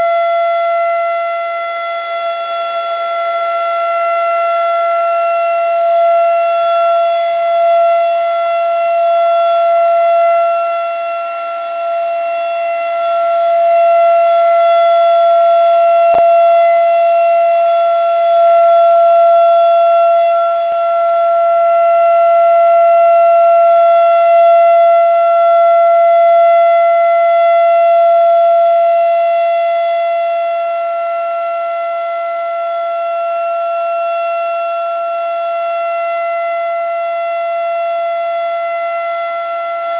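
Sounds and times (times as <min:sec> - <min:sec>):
rotating warning siren: 0:00.0 - 0:39.9.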